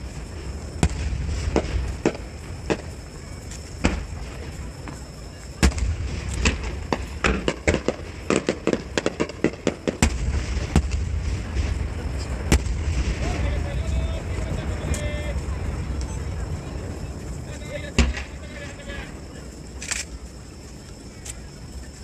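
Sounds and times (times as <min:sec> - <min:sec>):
fireworks bangs: 0:00.0 - 0:21.9
fireworks crackling pops: 0:00.0 - 0:22.0
low rumble: 0:10.0 - 0:20.7.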